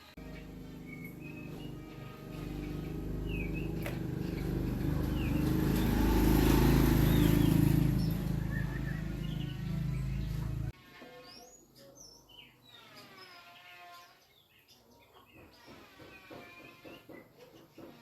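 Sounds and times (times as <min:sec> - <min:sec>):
motor humming: 0:00.0 - 0:10.7
birds chirping: 0:00.0 - 0:18.0.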